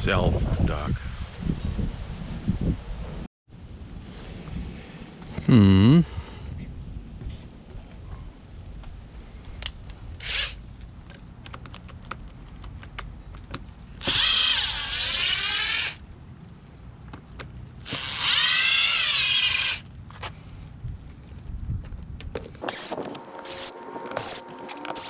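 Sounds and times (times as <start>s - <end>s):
cordless drill motor running: 10.2s - 10.6s, 14.0s - 16.0s, 17.9s - 19.8s, 22.6s - 25.0s.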